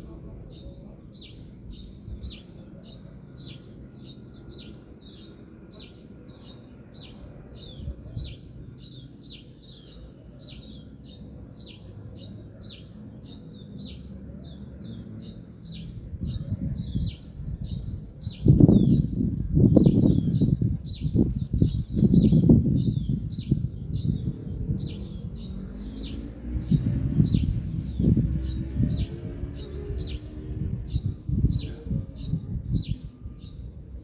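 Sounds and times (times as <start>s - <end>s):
small birds chirping: 0.0s - 34.0s
low rumbling noise: 15.6s - 34.0s.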